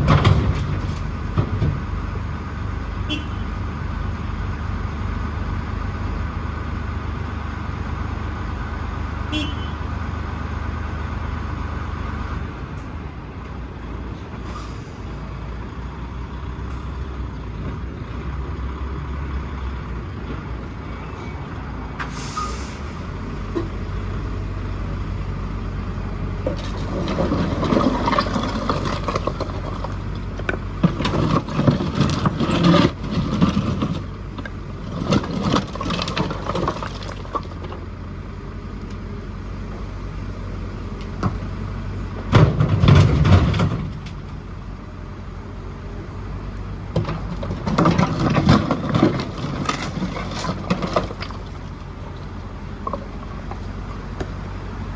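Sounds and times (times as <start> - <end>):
diesel engine running: 0.0 - 54.9
short hiss: 22.0 - 23.0
rubble clattering in bucket: 26.5 - 37.8, 47.0 - 51.8.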